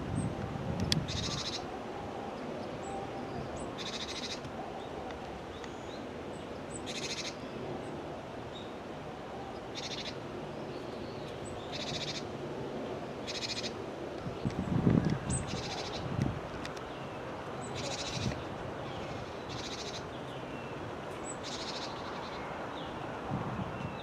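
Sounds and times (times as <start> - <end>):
outdoor background noise: 0.0 - 24.0
songbird buzzy calls: 1.0 - 1.7, 2.6 - 6.0, 6.7 - 7.5, 9.5 - 10.2, 11.4 - 12.3, 13.2 - 13.8, 15.2 - 16.1, 17.6 - 20.5, 21.2 - 22.5.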